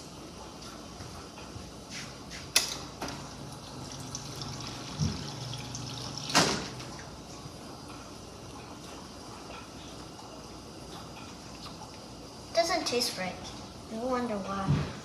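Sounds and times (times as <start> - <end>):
dispenser valve humming: 2.8 - 14.6
water running into a glass: 3.2 - 7.1.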